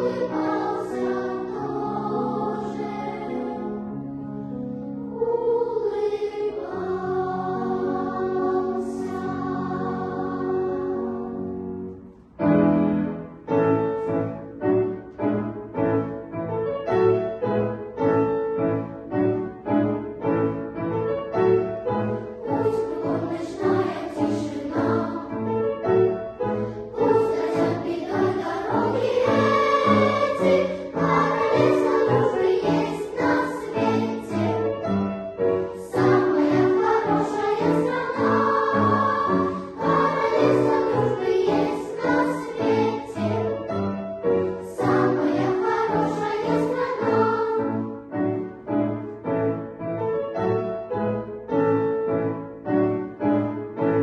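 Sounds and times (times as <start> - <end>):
children's choir singing: 0.0 - 16.1, 21.4 - 49.1.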